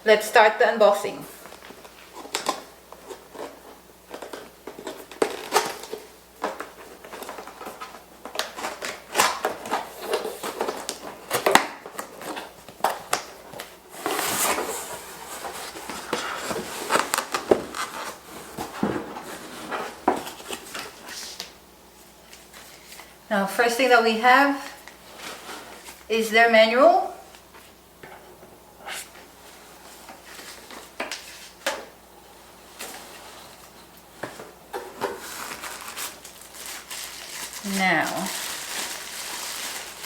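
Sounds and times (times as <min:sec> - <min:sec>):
packaging rustle: 0:01.5 - 0:18.7, 0:34.8 - 0:40.0.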